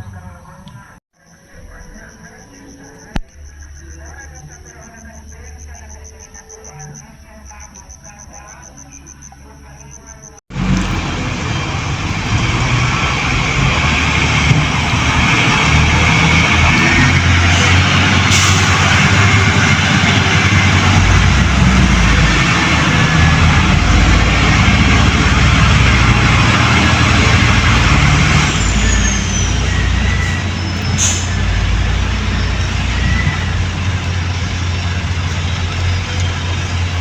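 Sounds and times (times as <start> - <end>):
heavy machine diesel engine: 10.5 - 37.0.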